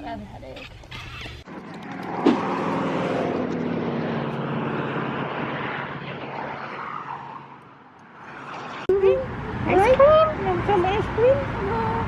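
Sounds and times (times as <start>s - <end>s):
engine drone passing: 0.8s - 12.0s.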